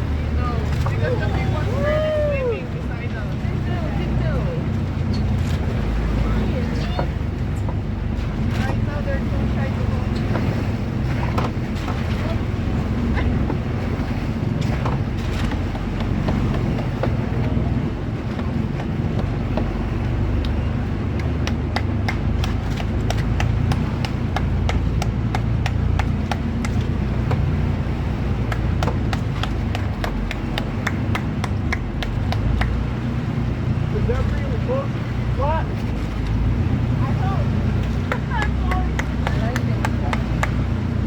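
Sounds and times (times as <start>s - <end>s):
boat engine droning: 0.0s - 41.0s
rapid irregular clicks and knocks: 14.5s - 33.2s, 37.8s - 41.0s.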